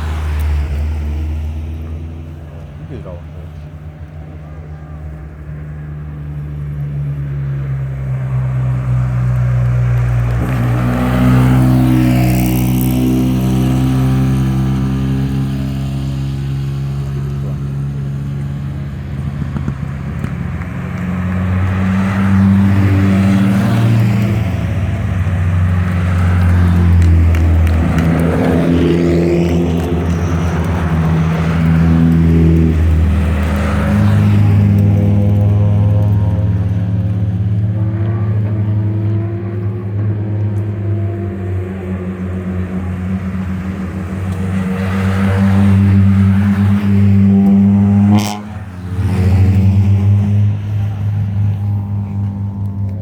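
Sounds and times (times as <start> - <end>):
race cars driving past: 0.0 - 53.0.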